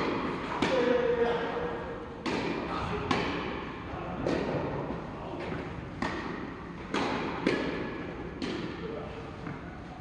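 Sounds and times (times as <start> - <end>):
tennis ball struck by rackets: 0.0 - 0.9, 2.2 - 3.6, 6.0 - 8.8
tennis ball bouncing on court: 2.2 - 3.6, 5.9 - 8.8.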